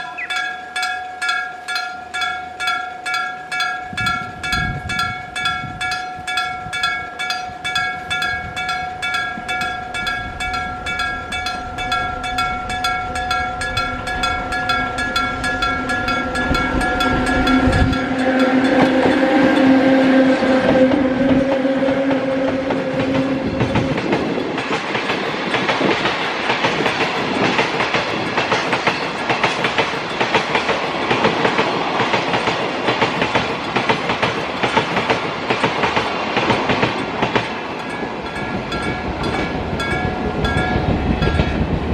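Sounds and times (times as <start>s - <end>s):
level crossing bell ringing: 0.0s - 20.0s, 37.8s - 41.7s
train passing: 0.0s - 41.9s
wheels clacking over rail joints: 0.2s - 41.9s.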